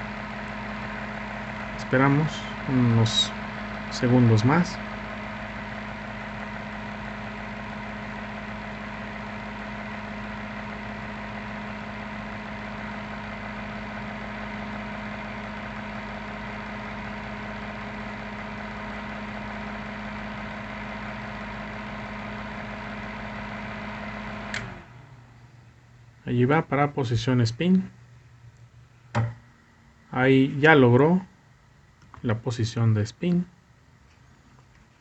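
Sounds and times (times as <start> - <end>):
washing machine pump humming: 0.0 - 26.2.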